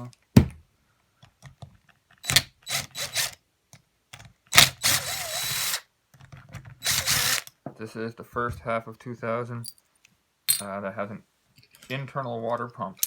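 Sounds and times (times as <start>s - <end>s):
cordless impact driver running: 2.3s - 3.4s, 4.6s - 5.8s, 6.8s - 7.5s.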